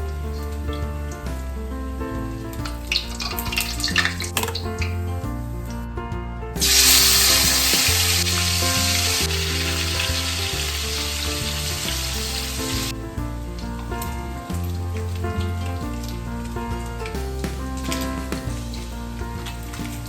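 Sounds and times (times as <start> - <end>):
background music: 0.0 - 20.0
food sizzling in hot oil: 6.6 - 12.9.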